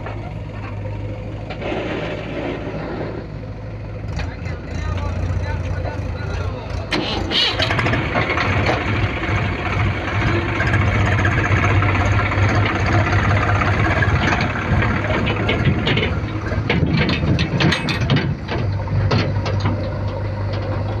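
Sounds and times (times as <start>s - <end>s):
diesel engine running: 0.0s - 21.0s
sharp clicks and knocks: 10.2s - 21.0s.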